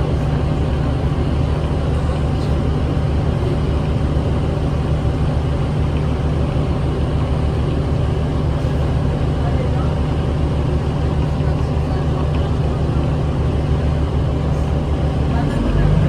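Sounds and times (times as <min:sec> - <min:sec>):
bus diesel engine drone: 0:00.0 - 0:16.0
road rumble: 0:00.0 - 0:16.0.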